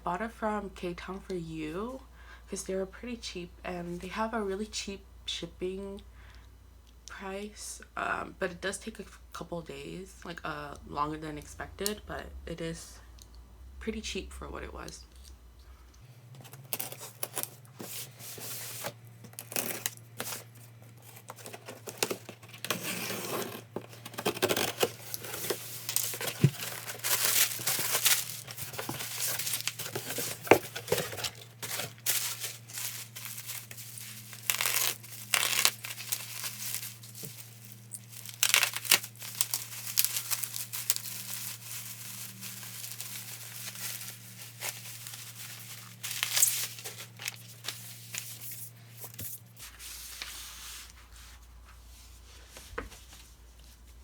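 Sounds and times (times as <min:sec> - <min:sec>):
plastic packaging tearing and crinkling: 0:16.4 - 0:49.2.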